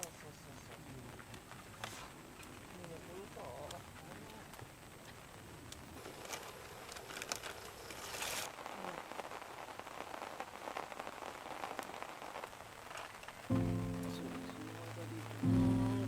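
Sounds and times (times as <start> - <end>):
faint pattering and crackling: 0.0 - 16.0
background music: 13.5 - 16.0.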